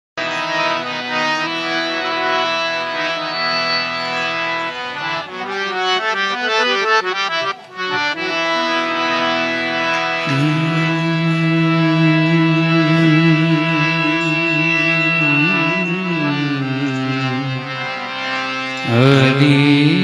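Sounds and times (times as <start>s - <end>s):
harmonium playing chords: 0.2s - 20.0s
low sustained note: 10.5s - 17.9s.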